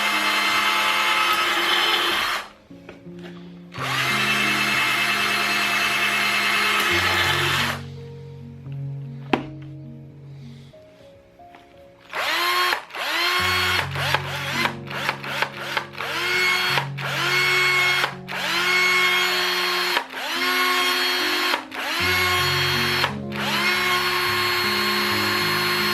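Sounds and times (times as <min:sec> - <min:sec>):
cordless drill whining: 0:00.0 - 0:02.6, 0:03.8 - 0:07.8, 0:12.1 - 0:25.9
background music: 0:00.0 - 0:25.9.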